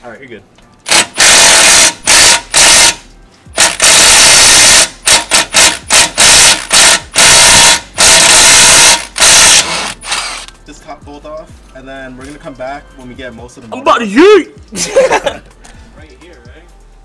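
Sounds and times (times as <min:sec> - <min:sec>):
power drill hammering rattle: 0:00.9 - 0:10.5.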